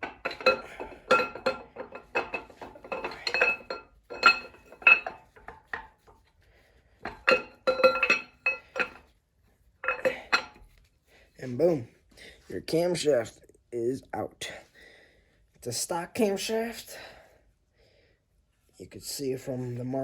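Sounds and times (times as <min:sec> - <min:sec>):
camshaft clinking metallically: 0:07.1 - 0:09.0.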